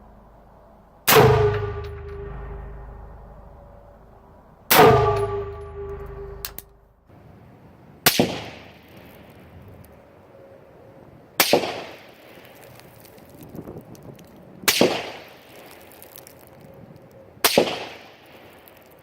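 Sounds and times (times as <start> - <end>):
steel target ringing: 1.1 - 4.1, 4.7 - 6.7
rifle gunshots: 8.0 - 9.5, 11.4 - 12.8, 14.7 - 15.8, 17.4 - 18.9.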